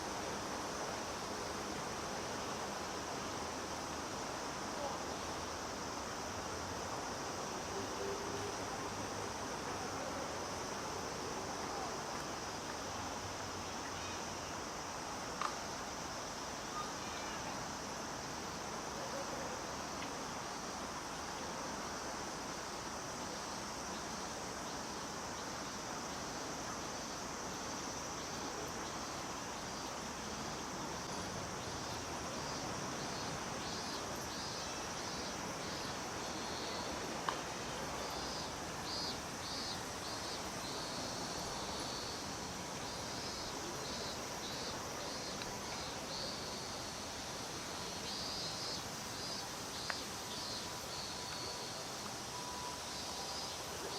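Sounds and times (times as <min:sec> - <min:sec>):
cicadas buzzing: 0:00.0 - 0:53.9
pulsing cicada call: 0:00.0 - 0:53.9.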